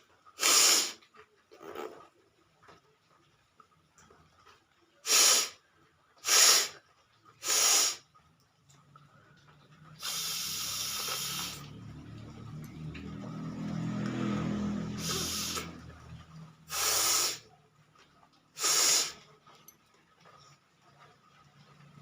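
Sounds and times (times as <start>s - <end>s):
person blowing and snorting nose: 0.4s - 1.0s, 5.1s - 5.5s, 6.2s - 6.8s, 7.4s - 8.0s, 15.0s - 15.7s, 16.7s - 17.4s, 18.6s - 19.2s.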